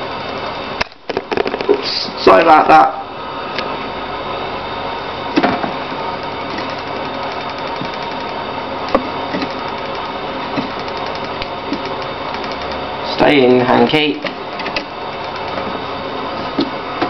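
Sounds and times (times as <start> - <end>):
steady background hum: 0.0 - 17.0.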